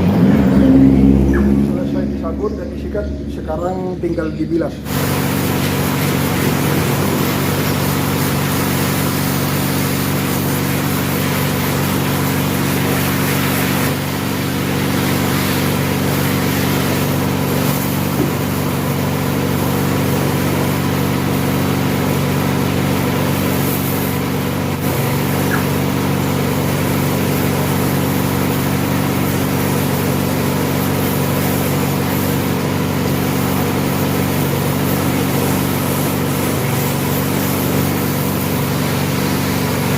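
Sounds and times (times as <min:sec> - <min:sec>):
pressure washer motor humming: 0:00.0 - 0:39.9
water jet hissing: 0:04.8 - 0:39.9.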